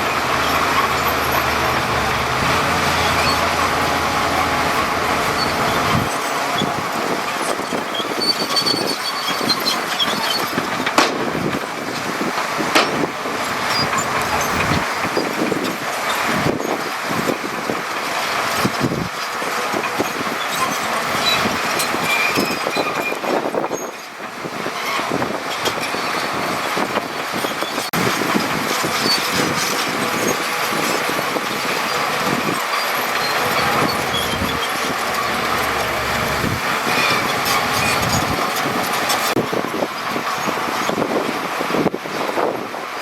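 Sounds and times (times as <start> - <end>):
tracks and stone rattling: 0.0 - 39.5
diesel engine noise: 0.0 - 43.0.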